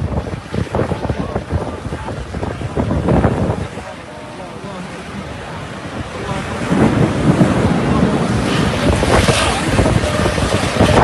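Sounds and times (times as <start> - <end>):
rain: 0.0 - 11.0
wind buffeting microphone: 0.0 - 11.0
thunder rumbling: 5.2 - 11.0.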